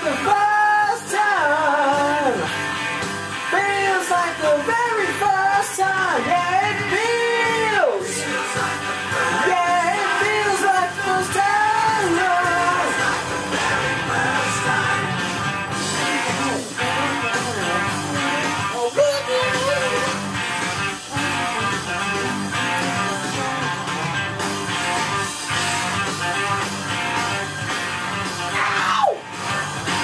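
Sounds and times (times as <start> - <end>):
electric guitar: 0.0 - 30.0
instrumental rock music: 0.0 - 30.0.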